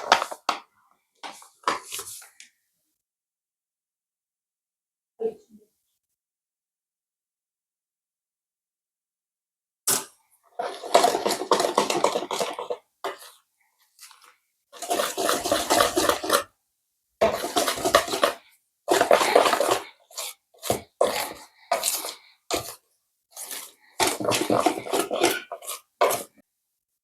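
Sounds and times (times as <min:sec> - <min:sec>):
batter whisked in bowl: 0:10.6 - 0:16.5, 0:17.2 - 0:26.5.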